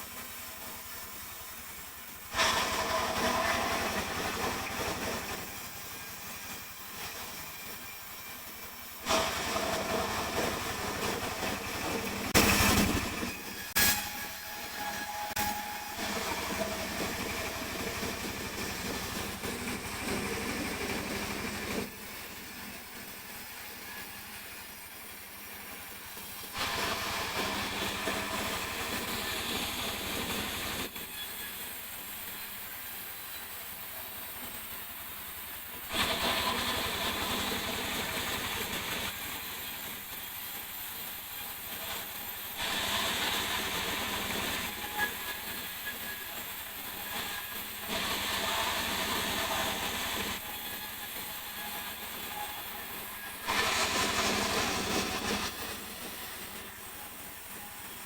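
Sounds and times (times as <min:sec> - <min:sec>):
sawmill saw cutting wood: 0:00.0 - 0:31.8, 0:35.9 - 0:58.0.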